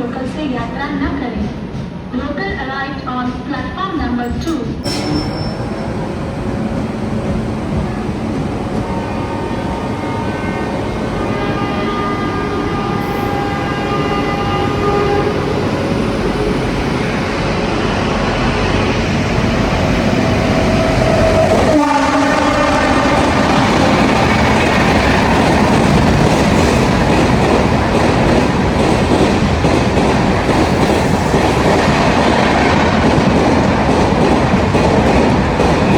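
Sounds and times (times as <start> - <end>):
passenger train rumbling: 0.0 - 35.9
high whining wheels on rails: 4.3 - 35.9
train horn: 5.0 - 18.6, 19.5 - 27.7.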